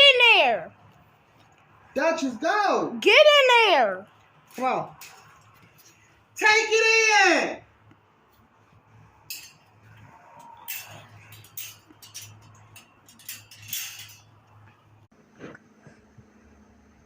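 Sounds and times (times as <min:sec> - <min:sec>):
irregular clicks and rattles: 0:10.6 - 0:14.9.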